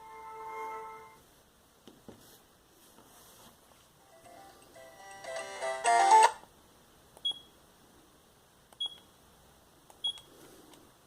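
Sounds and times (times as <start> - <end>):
phone ringtone: 4.0 - 6.4
keypad beeps with clicks: 7.2 - 7.5, 8.8 - 9.1, 10.0 - 10.3.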